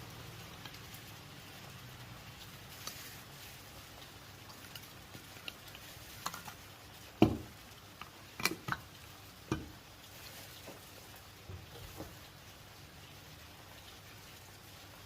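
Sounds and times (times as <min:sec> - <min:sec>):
faint rain hiss: 0:00.0 - 0:15.0
thump: 0:07.2 - 0:07.5.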